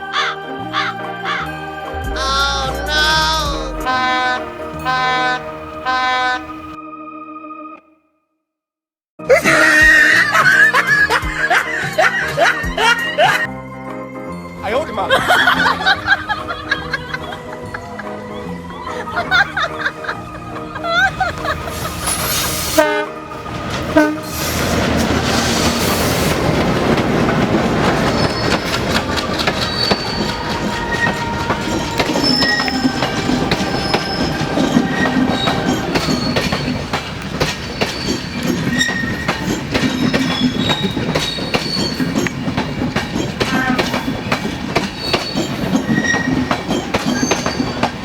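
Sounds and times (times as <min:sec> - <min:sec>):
train rumbling on rails: 0:00.2 - 0:06.8, 0:15.2 - 0:48.0
high wheel squeals: 0:21.0 - 0:48.0
wheels clacking over rail joints: 0:21.0 - 0:48.0.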